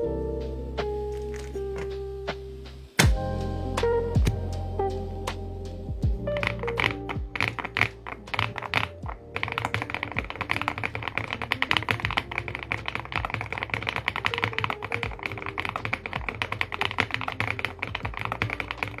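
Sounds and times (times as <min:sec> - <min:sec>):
soft background music: 0:00.0 - 0:19.0
mechanical keyboard typing: 0:06.4 - 0:19.0.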